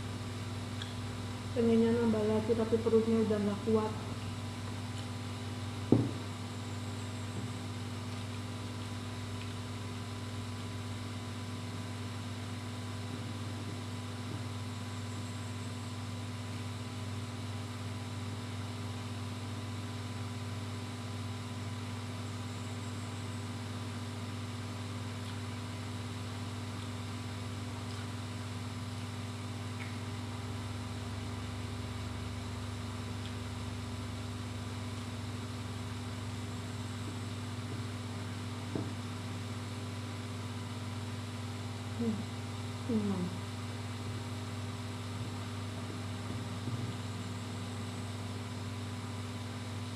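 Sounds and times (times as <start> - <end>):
low electrical hum: 0.0 - 49.9
short knock: 5.9 - 6.2.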